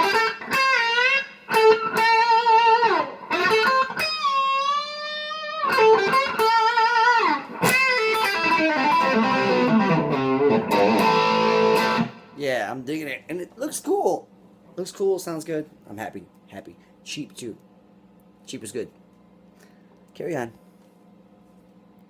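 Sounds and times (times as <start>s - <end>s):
electric guitar lead line: 0.0s - 12.4s.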